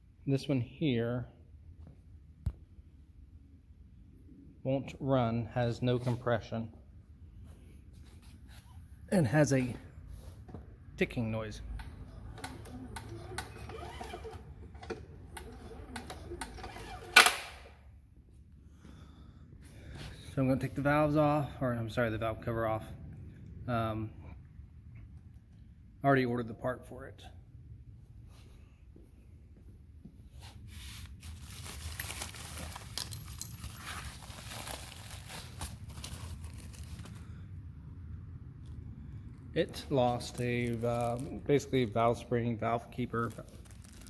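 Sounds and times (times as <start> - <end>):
hand tools and metal parts clinking: 31.6 - 34.7.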